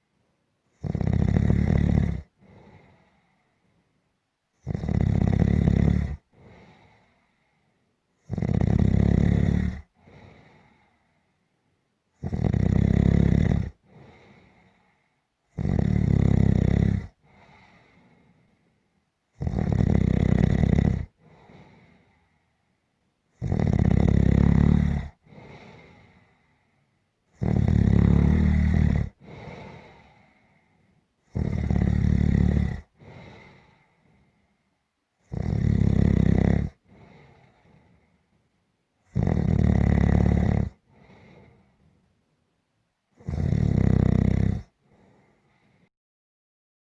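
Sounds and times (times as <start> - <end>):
low rattling snore: 0.8 - 2.8, 4.6 - 6.8, 8.2 - 9.9, 12.2 - 14.2, 15.5 - 17.2, 19.4 - 21.8, 23.4 - 26.0, 27.4 - 30.2, 31.3 - 33.7, 35.2 - 37.8, 39.1 - 41.6, 43.2 - 44.8
faint breath: 2.2 - 4.2, 6.2 - 8.2, 9.8 - 11.9, 13.7 - 15.4, 17.0 - 19.1, 21.1 - 22.9, 25.1 - 27.2, 29.1 - 31.2, 32.8 - 34.9, 36.7 - 38.6, 40.7 - 42.4, 44.6 - 45.9.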